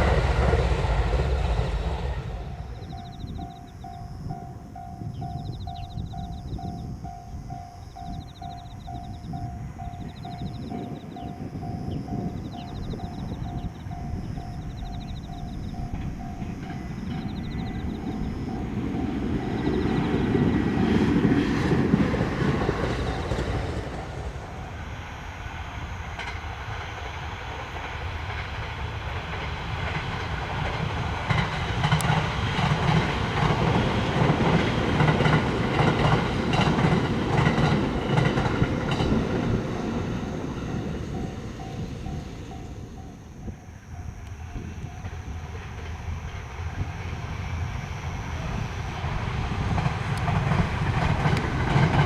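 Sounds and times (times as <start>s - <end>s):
train wheels clattering over rail joints: 27.8s - 42.8s, 49.0s - 52.0s.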